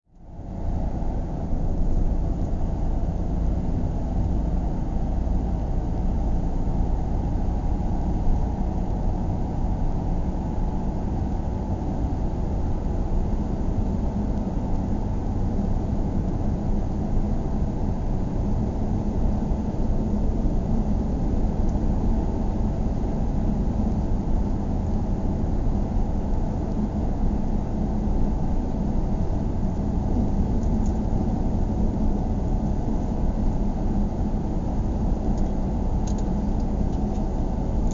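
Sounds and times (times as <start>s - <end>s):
car road and engine rumble: 0.1s - 37.9s.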